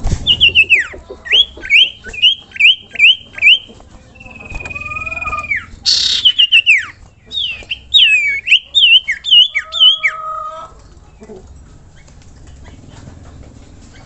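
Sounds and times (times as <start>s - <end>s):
bird singing whistled notes: 0.2s - 10.2s.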